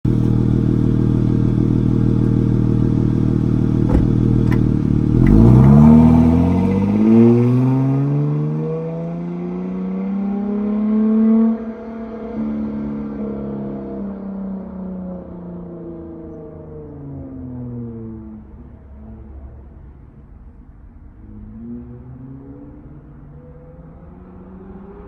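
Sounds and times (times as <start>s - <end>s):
car engine revving: 0.1s - 8.2s.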